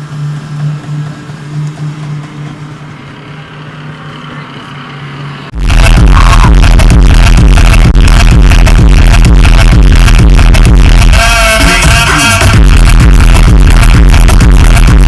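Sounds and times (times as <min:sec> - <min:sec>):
pulsing low tone: 0:05.5 - 0:11.2, 0:12.4 - 0:15.0
loud electronic music: 0:05.5 - 0:15.0
steady low hum: 0:12.5 - 0:15.0.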